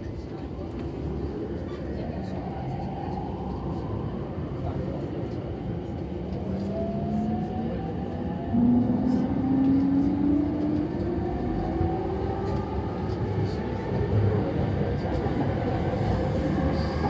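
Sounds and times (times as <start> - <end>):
train car rumble: 8.6 - 17.0.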